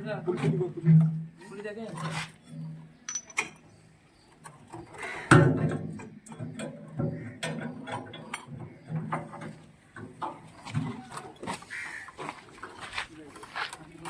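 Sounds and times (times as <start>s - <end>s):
metal parts clanking: 3.1s - 3.6s.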